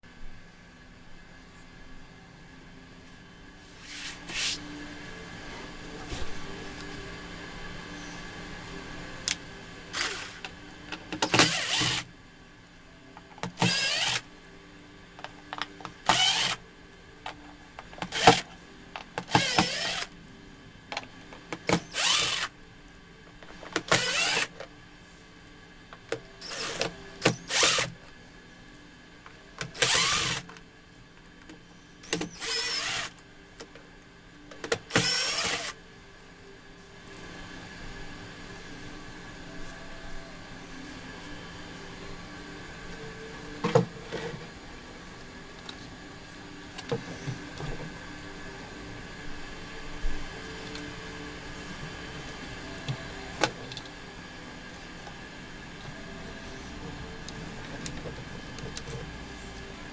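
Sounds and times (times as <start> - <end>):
rasping scraping strokes: 3.6 - 4.7.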